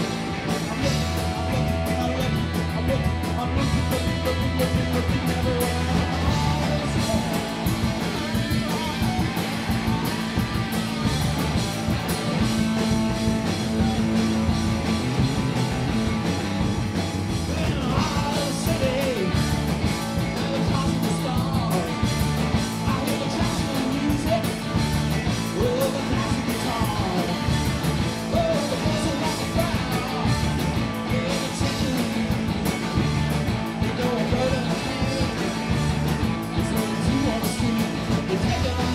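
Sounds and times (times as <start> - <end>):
rock band playing live: 0.0 - 38.9
person singing: 0.6 - 9.3, 17.4 - 27.6, 28.2 - 33.0, 36.6 - 38.9.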